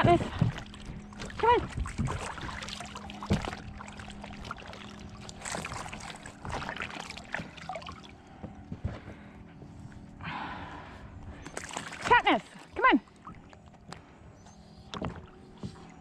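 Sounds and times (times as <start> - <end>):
knocks and rustles on plastic kayak: 0.0 - 4.6, 8.3 - 9.9
faint low hum: 0.0 - 16.0.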